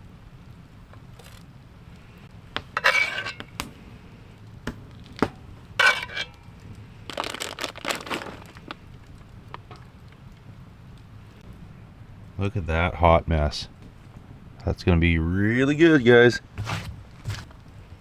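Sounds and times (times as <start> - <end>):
cooking gear scraping and crinkling: 0.8 - 11.5, 16.4 - 18.0
sharp cracks: 2.3 - 11.1.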